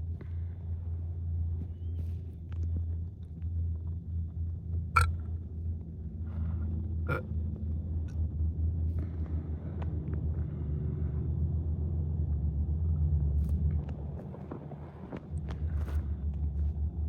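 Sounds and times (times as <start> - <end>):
low rumble inside car: 0.0 - 17.0.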